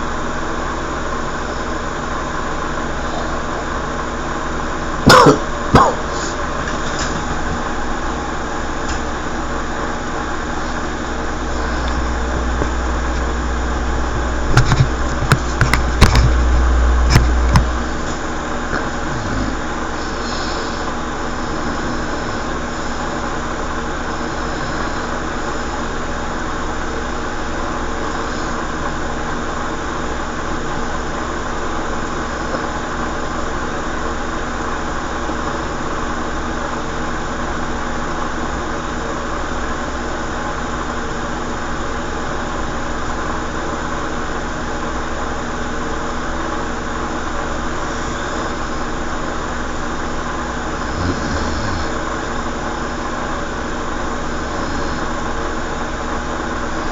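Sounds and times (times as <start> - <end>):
mechanical hum: 0.0 - 56.9
low rumble: 10.6 - 19.8.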